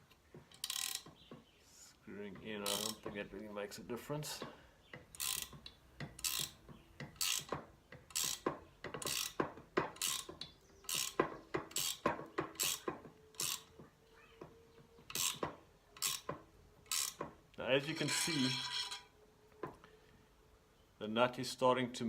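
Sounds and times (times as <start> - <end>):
spanner ratcheting clicks: 2.6 - 3.0.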